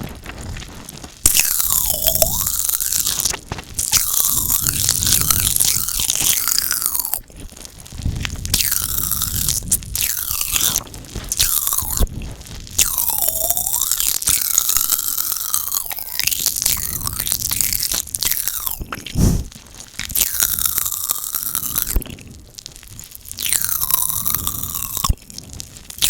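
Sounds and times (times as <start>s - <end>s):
wet mouth popping and clicking: 1.3s - 7.2s, 8.5s - 10.8s, 12.8s - 22.1s, 23.4s - 25.2s.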